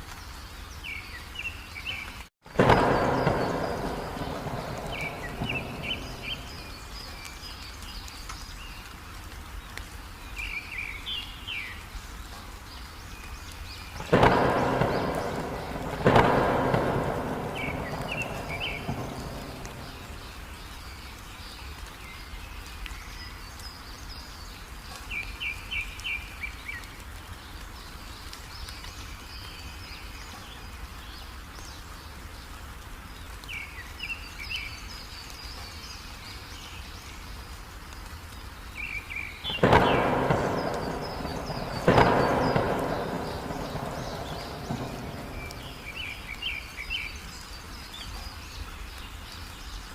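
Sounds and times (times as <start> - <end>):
heavy rain: 0.0 - 49.9
bird chirps: 0.8 - 8.8, 13.2 - 22.3, 38.8 - 49.0
thunderclaps: 2.4 - 7.9, 13.9 - 20.9, 39.4 - 46.9.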